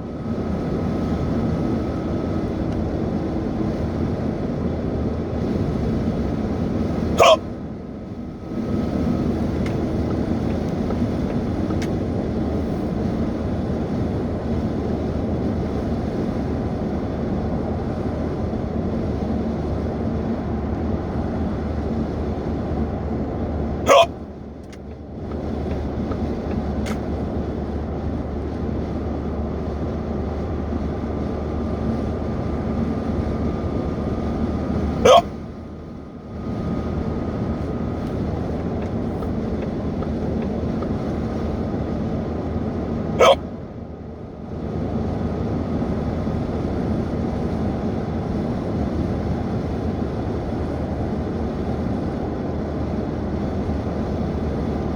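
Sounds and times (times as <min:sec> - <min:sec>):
person hiccuping: 0:07.2 - 0:07.4, 0:23.9 - 0:24.2, 0:35.0 - 0:35.3, 0:43.2 - 0:43.4.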